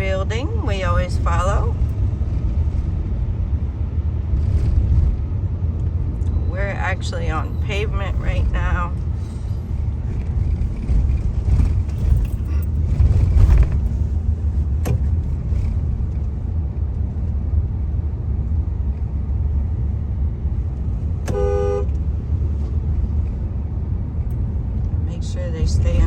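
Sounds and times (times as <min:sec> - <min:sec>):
car engine and tyres rumbling: 0:00.0 - 0:26.0
vehicle horn honk: 0:21.3 - 0:22.0.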